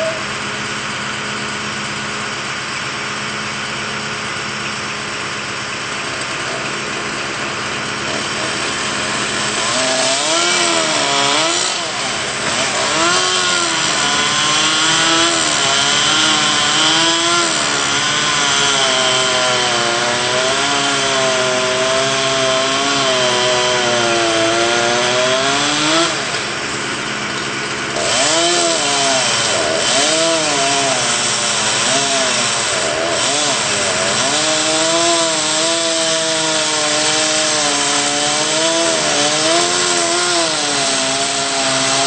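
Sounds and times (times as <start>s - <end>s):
chainsaw cutting wood: 0.0s - 4.9s, 5.5s - 42.0s
truck engine idling: 0.0s - 20.4s, 26.1s - 34.3s.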